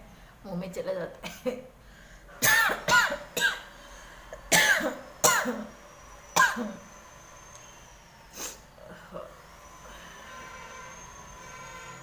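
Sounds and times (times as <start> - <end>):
woman coughing: 1.2 - 1.7, 2.4 - 3.6, 4.5 - 5.7, 6.4 - 6.8.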